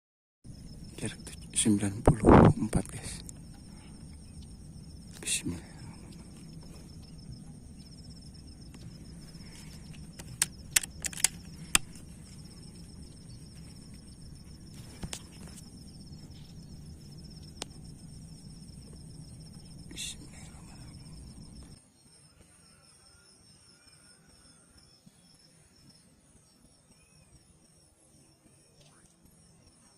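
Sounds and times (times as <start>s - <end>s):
insects trilling: 0.5s - 29.9s
low rumble: 2.2s - 21.8s
sharp loud clicks: 10.2s - 12.0s.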